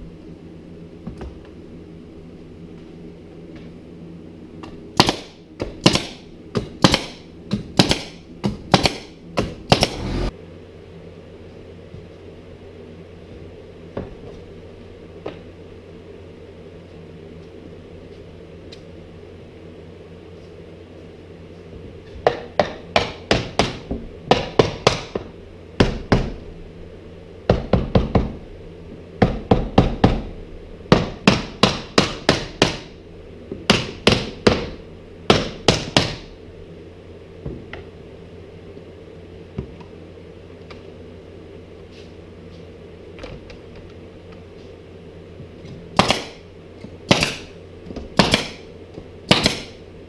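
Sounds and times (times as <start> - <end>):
low hum: 0.0 - 50.0
hammer striking wood: 5.0 - 10.1, 22.2 - 26.4, 27.5 - 28.4, 29.2 - 30.3, 30.9 - 33.0, 33.7 - 36.3, 46.0 - 46.4, 47.1 - 47.5, 48.2 - 48.6, 49.3 - 49.8.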